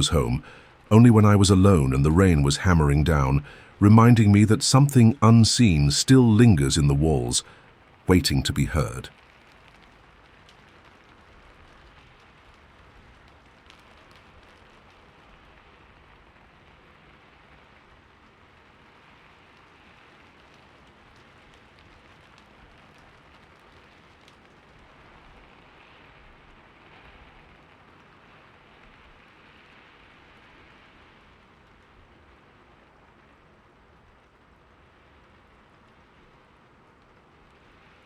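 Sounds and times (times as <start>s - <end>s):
rain drop ticks: 0.0s - 15.8s, 19.4s - 29.4s
faint rain falling: 0.0s - 38.0s.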